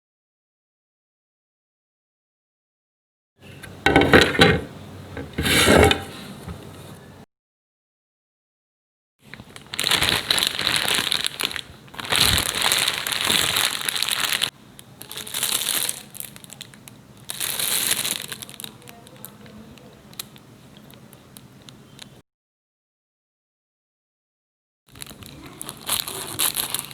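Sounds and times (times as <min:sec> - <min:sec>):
plastic packet crinkling: 0:09.2 - 0:22.2, 0:24.9 - 0:26.9.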